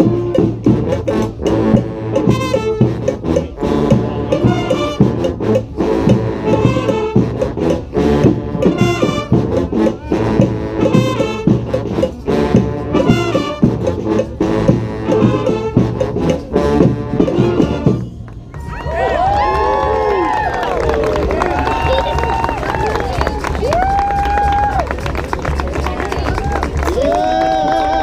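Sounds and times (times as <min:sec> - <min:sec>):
brass horns playing salsa: 0:00.0 - 0:20.2
busy percussion beat: 0:00.0 - 0:28.0.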